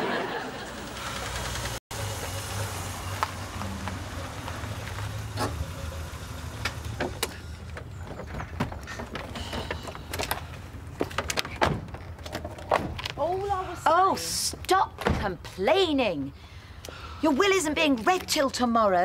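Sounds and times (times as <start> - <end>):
vehicle engine rumbling: 0.4 - 14.0.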